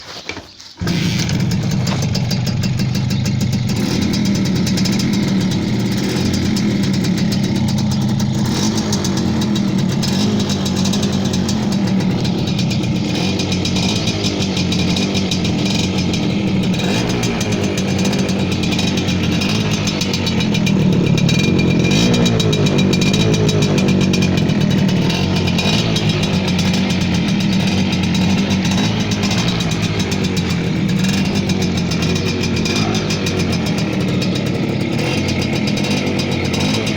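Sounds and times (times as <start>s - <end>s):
two-stroke motorcycle engine idling: 0.8s - 36.9s.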